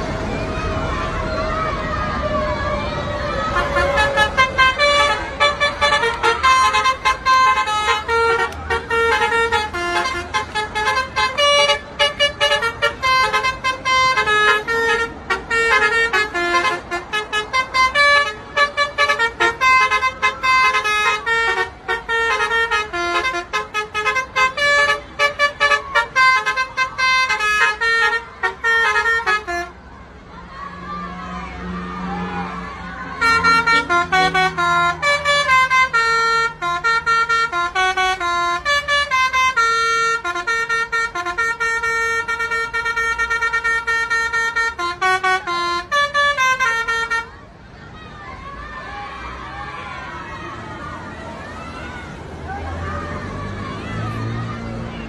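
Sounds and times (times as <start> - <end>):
multi-tone bus horn tune: 2.2 - 30.0, 30.7 - 47.5.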